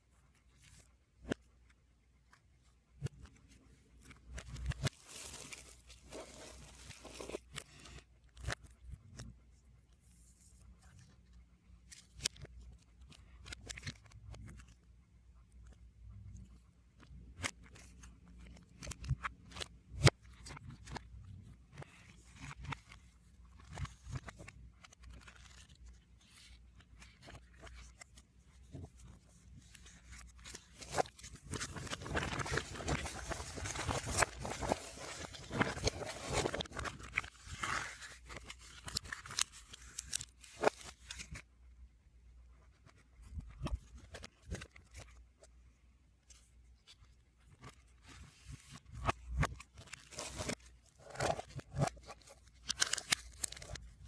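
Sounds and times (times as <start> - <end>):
paper and plastic crinkling: 4.0 - 8.6, 28.7 - 41.4, 48.1 - 54.0.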